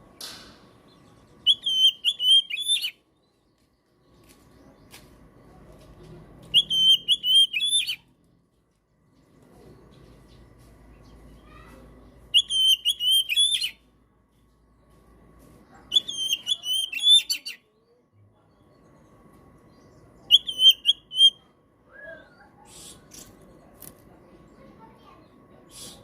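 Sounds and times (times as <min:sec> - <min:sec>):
bird singing whistled notes: 0:01.4 - 0:03.0, 0:06.5 - 0:08.1, 0:12.3 - 0:13.8, 0:15.9 - 0:17.6, 0:20.2 - 0:22.4.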